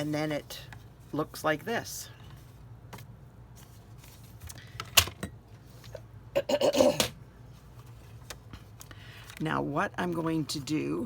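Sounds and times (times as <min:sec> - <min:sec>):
paper rustling: 0:03.5 - 0:04.6.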